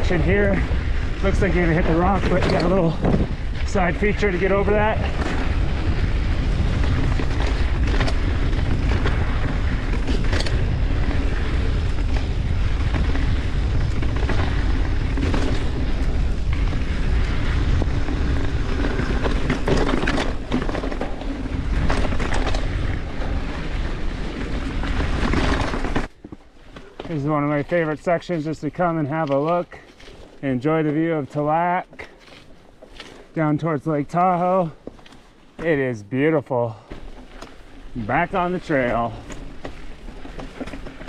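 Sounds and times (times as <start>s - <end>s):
wind rushing over microphone: 0.0s - 26.1s
bike knocks and rattles: 0.0s - 28.0s, 36.8s - 41.0s
bike tyre noise: 0.0s - 41.0s.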